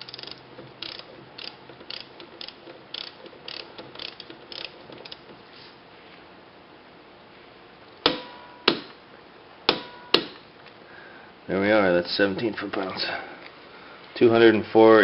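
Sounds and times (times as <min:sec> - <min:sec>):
torque wrench ratchet clicks: 0:00.0 - 0:05.2.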